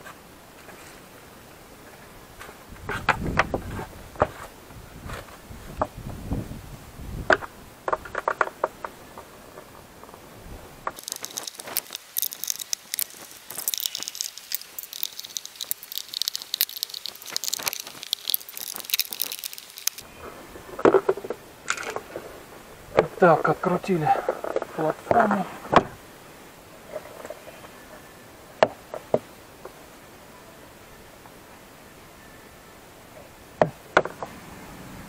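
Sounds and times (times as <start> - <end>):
high crackling rustle: 10.9 - 20.9.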